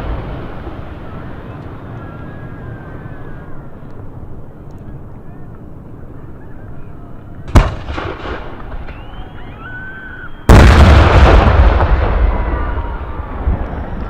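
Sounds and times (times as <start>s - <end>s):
rumbling tail: 10.5s - 14.0s.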